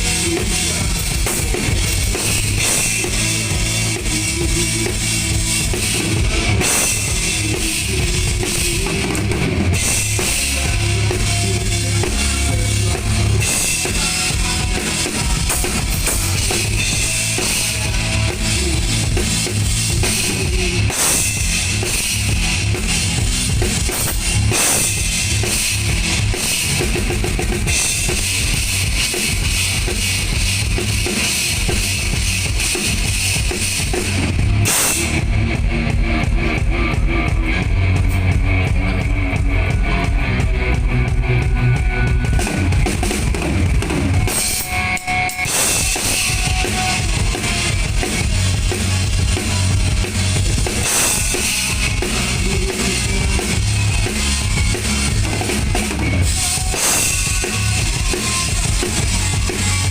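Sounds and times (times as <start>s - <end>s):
heavy bass drum: 0.0s - 59.9s
live rock band: 0.0s - 59.9s
cymbals crashing: 44.3s - 47.7s.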